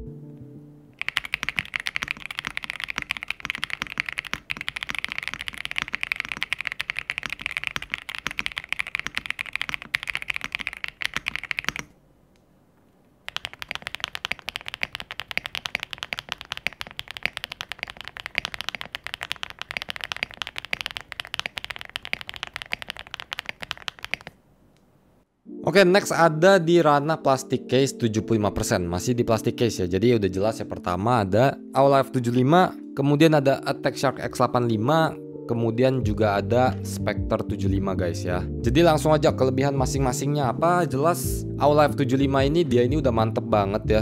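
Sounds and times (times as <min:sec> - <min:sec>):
mechanical keyboard typing clatter: 0:01.0 - 0:11.9, 0:13.3 - 0:24.4.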